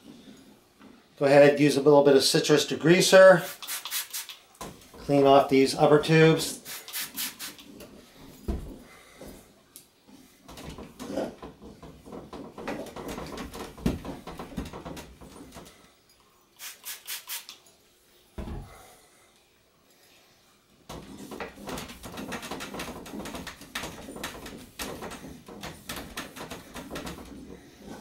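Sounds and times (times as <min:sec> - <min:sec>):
rag rubbing on metal tubes: 0:03.2 - 0:04.4, 0:06.1 - 0:08.2, 0:20.9 - 0:28.0
occasional knocks: 0:10.5 - 0:15.7, 0:20.9 - 0:27.8.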